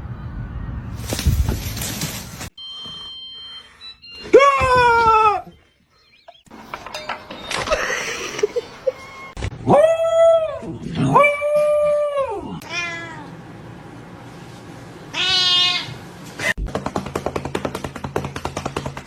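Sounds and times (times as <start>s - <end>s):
cat meowing: 12.6s - 13.3s, 15.1s - 16.0s.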